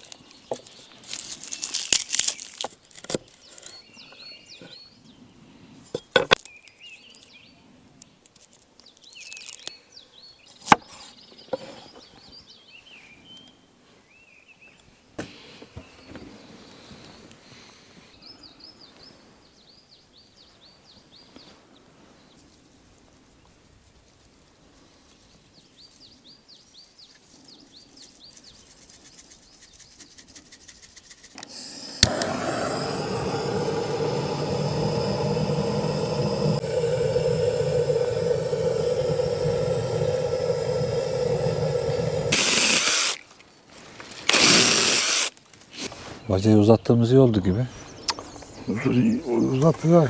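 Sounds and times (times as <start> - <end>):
small birds chirping: 0.0 - 2.6, 3.2 - 5.4, 31.4 - 43.2, 44.2 - 50.0
loud steady humming drone: 31.4 - 43.0
forest ambience: 31.4 - 50.0.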